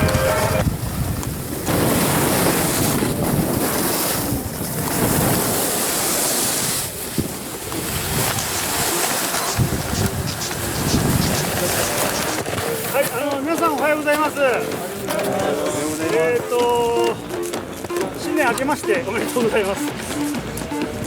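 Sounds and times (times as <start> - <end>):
wind buffeting microphone: 0.0 - 12.8.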